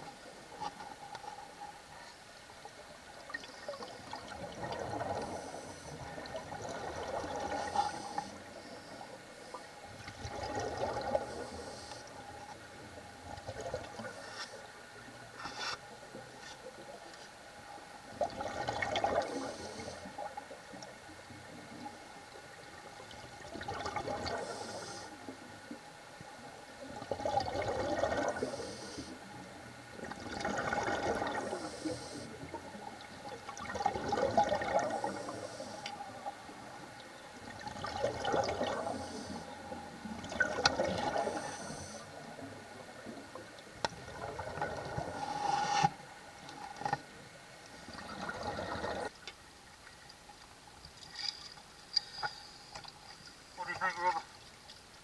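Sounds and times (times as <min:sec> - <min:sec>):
bubbles gurgling from exhaled air: 0:03.3 - 0:08.4, 0:09.9 - 0:11.8, 0:18.1 - 0:20.5, 0:23.2 - 0:25.1, 0:26.8 - 0:29.0, 0:29.9 - 0:36.3, 0:37.4 - 0:43.3, 0:43.9 - 0:45.8, 0:47.9 - 0:49.1
regulator inhalation hiss: 0:28.4 - 0:29.2, 0:35.0 - 0:35.9, 0:38.8 - 0:39.6.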